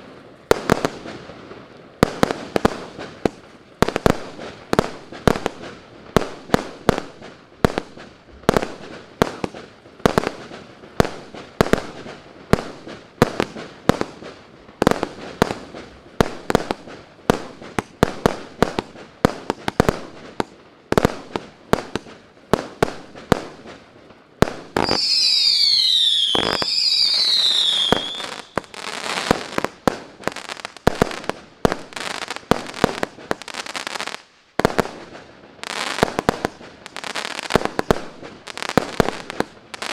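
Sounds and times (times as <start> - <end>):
firework shots: 0.0 - 23.8, 24.4 - 39.9
falling firework whistles: 24.8 - 29.6.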